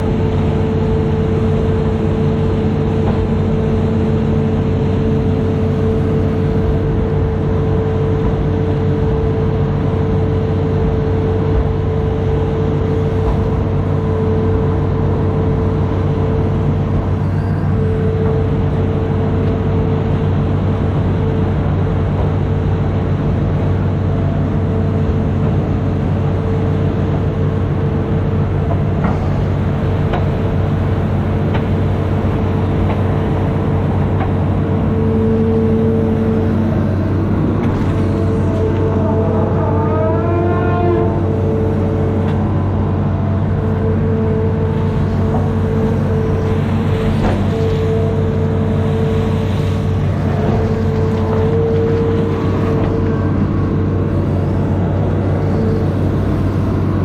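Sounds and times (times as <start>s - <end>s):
excavator diesel engine running: 0.0s - 57.0s
steady whine: 0.0s - 57.0s.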